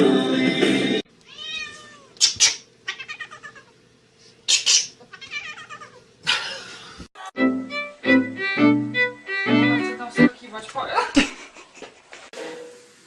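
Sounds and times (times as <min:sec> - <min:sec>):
music: 0:00.0 - 0:01.0, 0:07.3 - 0:10.4
cat meowing: 0:01.2 - 0:03.8, 0:05.1 - 0:06.0.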